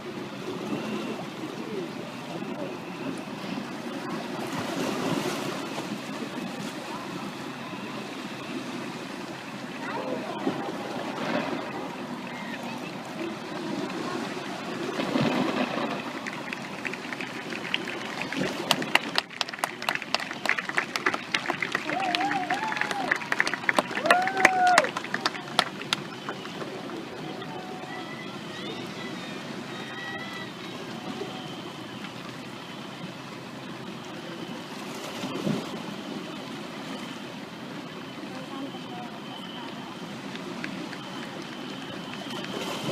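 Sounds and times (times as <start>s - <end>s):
crowd murmur: 0.0s - 42.9s
applause: 15.2s - 28.1s, 39.5s - 42.9s.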